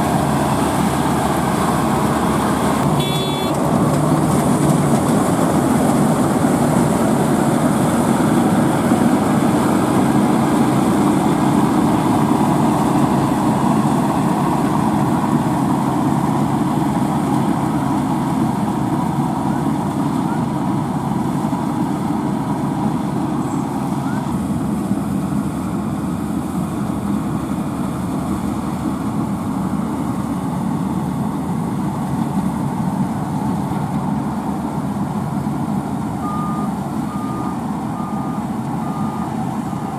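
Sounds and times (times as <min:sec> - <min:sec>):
diesel farm machinery engines: 0:00.0 - 0:39.9.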